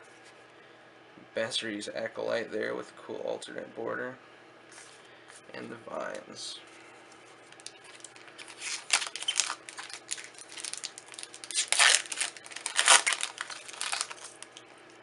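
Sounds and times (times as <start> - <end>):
foil wrapper tearing and crinkling: 7.5 - 14.6.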